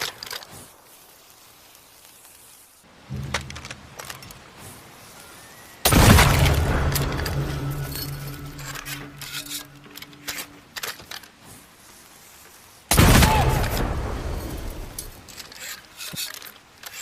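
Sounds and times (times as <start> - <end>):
gunshot blast: 5.9 - 8.9, 12.9 - 14.9.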